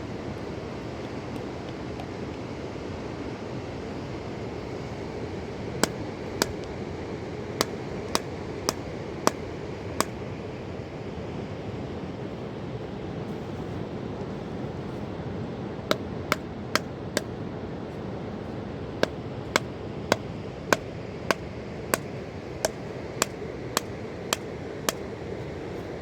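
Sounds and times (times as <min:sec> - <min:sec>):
sharp hard knocks: 0:22.0 - 0:25.0.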